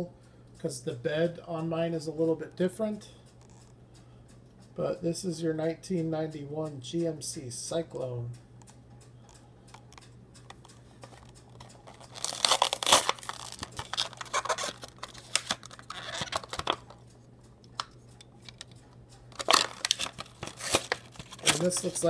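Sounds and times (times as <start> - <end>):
packaging rustling and tearing: 11.0 - 17.0, 18.4 - 22.0.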